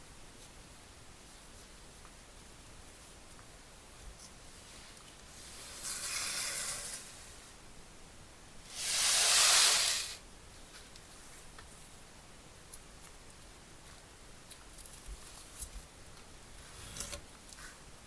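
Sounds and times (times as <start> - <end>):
hissing sprays: 8.7 - 10.2.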